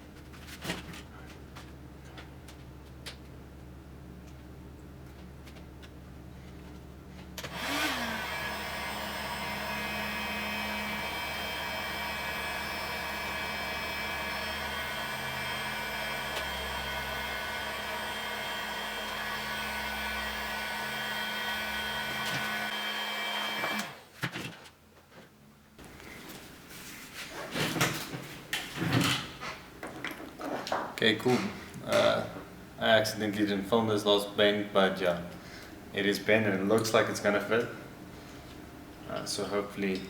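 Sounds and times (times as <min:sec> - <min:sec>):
heat gun fan whining: 0:06.7 - 0:24.1.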